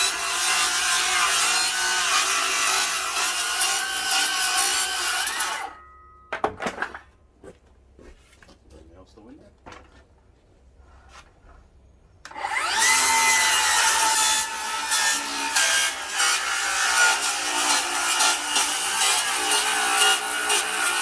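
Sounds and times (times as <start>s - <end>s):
circular saw whining: 0.0s - 5.8s, 12.3s - 21.0s
saw grinding through nailed wood: 0.0s - 5.8s, 12.3s - 21.0s.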